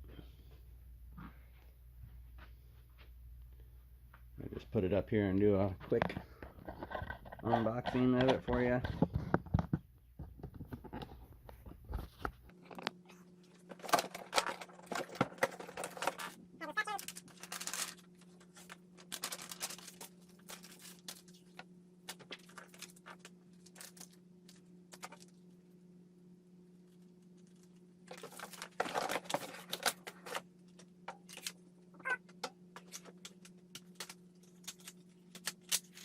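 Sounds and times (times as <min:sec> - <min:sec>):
low electrical hum: 0:00.0 - 0:36.0
handling boxed tool and packaging: 0:12.0 - 0:25.4, 0:27.4 - 0:36.0.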